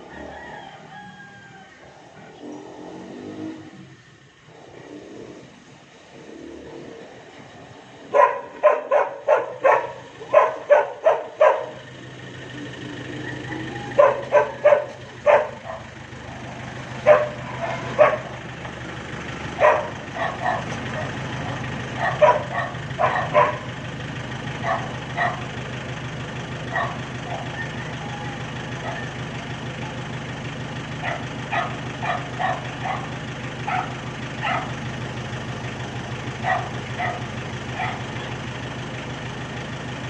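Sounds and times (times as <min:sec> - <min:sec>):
low engine hum: 0:00.0 - 0:40.0
dog barking: 0:08.1 - 0:11.9, 0:13.5 - 0:18.4, 0:19.5 - 0:23.8, 0:24.5 - 0:25.5, 0:26.6 - 0:29.2, 0:31.0 - 0:34.9, 0:36.3 - 0:38.3.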